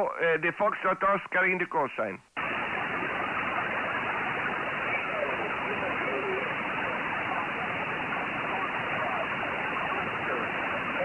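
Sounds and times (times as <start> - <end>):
radio static hiss: 0.0 - 11.0
weak voice under noise: 2.8 - 11.0.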